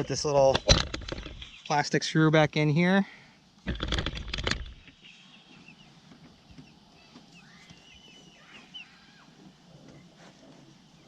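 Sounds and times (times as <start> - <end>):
faint poultry calls: 5.0 - 11.0.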